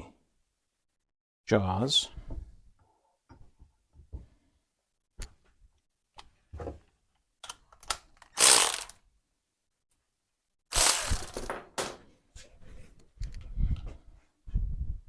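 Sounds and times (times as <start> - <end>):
power tool burst: 8.4 - 8.9, 10.7 - 12.0.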